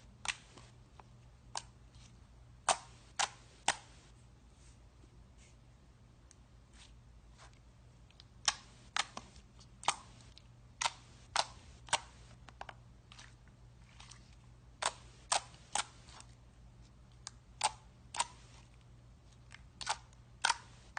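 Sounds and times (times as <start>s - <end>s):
faint low hum: 0.0s - 20.9s.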